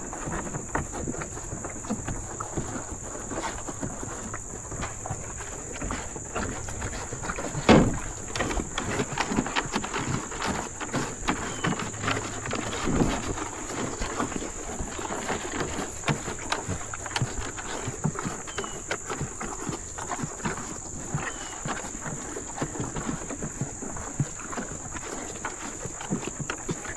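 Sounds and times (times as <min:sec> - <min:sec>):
cattle feeding at trough: 0:00.0 - 0:26.9
loud thump: 0:07.7 - 0:08.0.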